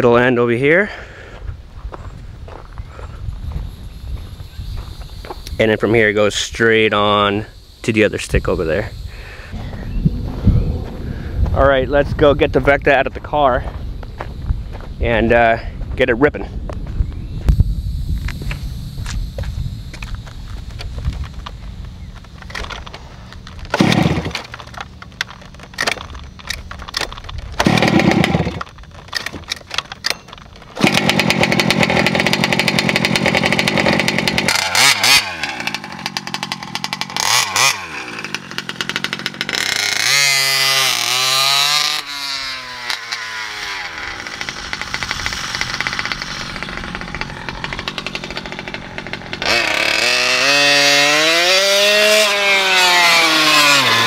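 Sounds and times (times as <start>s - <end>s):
rc truck motor whining: 30.8s - 54.0s.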